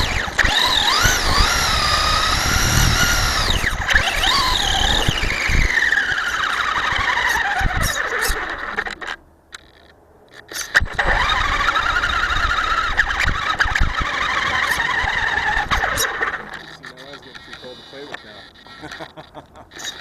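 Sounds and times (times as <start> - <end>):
rc truck motor whining: 0.0 - 20.0.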